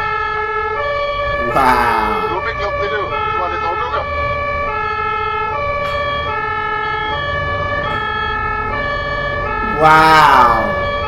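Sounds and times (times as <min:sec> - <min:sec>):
ambulance two-tone siren: 0:00.0 - 0:11.0
low rumble of traffic: 0:02.3 - 0:11.0.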